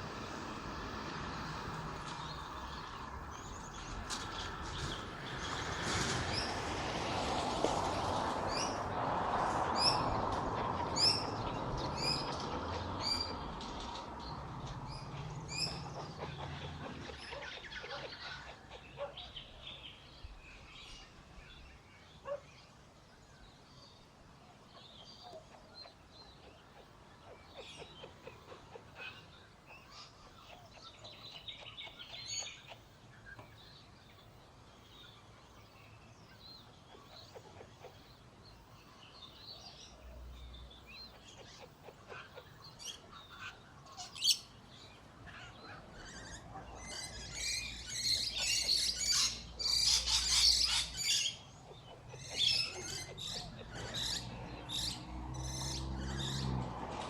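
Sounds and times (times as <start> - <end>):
small animals chirping and squeaking: 45.3 - 56.5.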